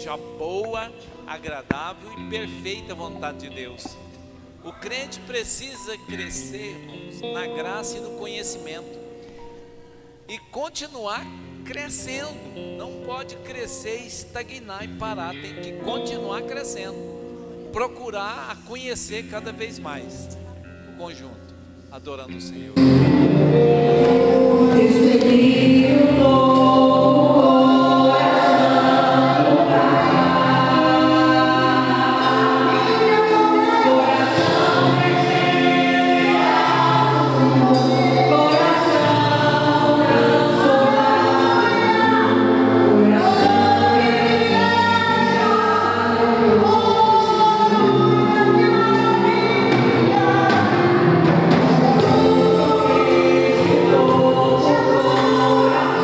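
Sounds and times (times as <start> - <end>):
instrumental accompaniment: 11.2 - 56.0
choir singing gospel: 22.8 - 56.0.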